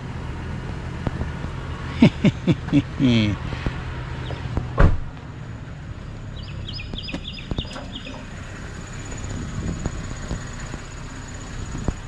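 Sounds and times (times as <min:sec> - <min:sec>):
steady low rumble: 0:00.0 - 0:12.0
bird chirping: 0:04.2 - 0:04.5, 0:06.3 - 0:09.3.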